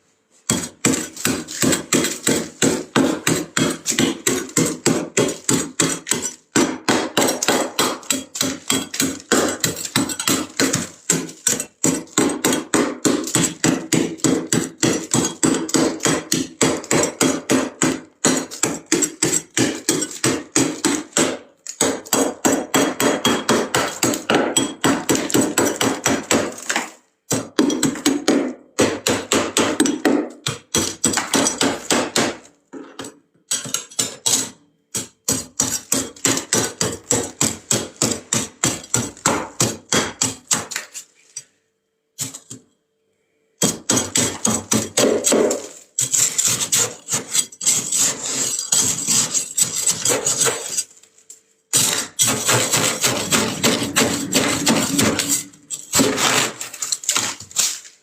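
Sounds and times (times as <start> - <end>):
frost scraping in freezer: 45.6 - 51.0, 51.7 - 58.0.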